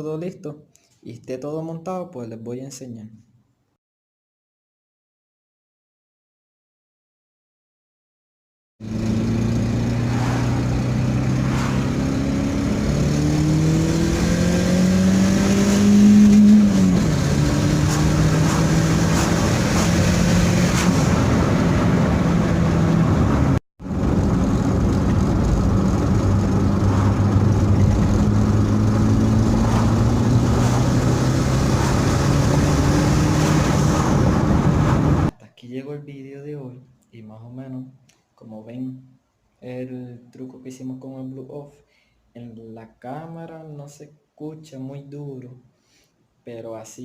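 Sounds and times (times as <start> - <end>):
turbocharged car engine accelerating: 8.8 - 35.3.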